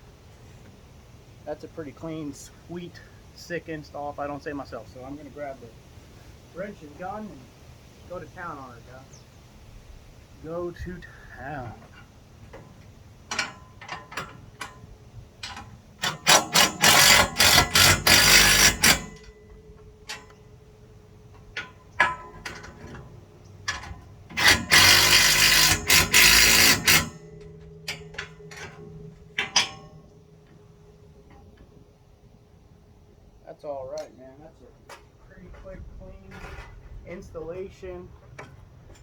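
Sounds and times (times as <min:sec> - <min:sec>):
clicks and knocks of tools: 0:11.8 - 0:20.5, 0:21.3 - 0:30.6
impact gun tightening bolts: 0:13.3 - 0:19.3, 0:23.7 - 0:29.9.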